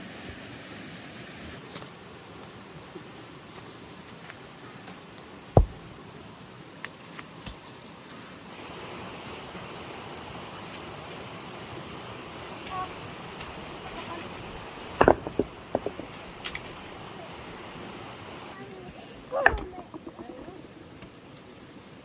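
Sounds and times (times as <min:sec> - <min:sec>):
high thin insect drone: 0:00.0 - 0:22.0
dull thump: 0:05.6 - 0:05.9, 0:15.0 - 0:16.2, 0:19.3 - 0:20.3.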